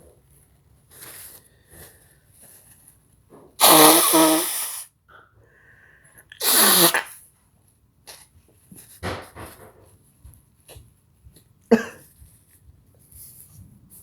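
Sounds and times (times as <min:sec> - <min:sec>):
man sneezing: 0:06.4 - 0:07.1.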